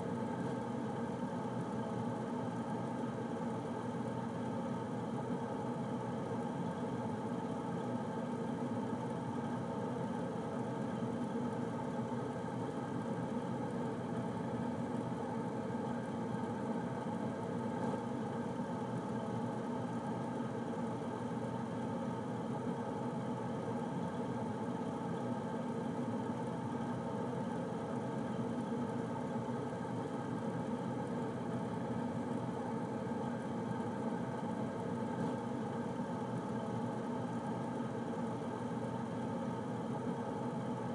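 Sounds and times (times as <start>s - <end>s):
air conditioner humming: 0.0s - 40.9s.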